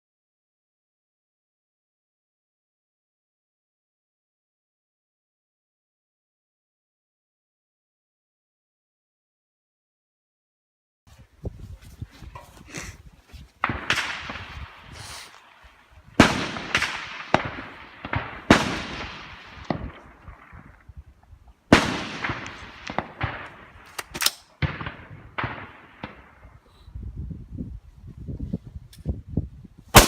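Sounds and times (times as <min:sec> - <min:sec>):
fainter distant rifle shots: 0:13.6 - 0:15.6, 0:16.2 - 0:20.8, 0:21.7 - 0:26.5
rifle shots with rolling echo: 0:13.6 - 0:21.0, 0:21.7 - 0:26.6.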